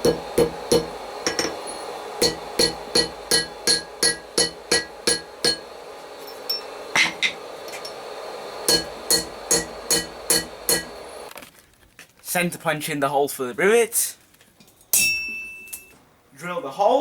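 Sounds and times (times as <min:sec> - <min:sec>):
hammer striking steel on anvil: 0:00.0 - 0:08.0, 0:08.7 - 0:11.1, 0:14.9 - 0:15.9.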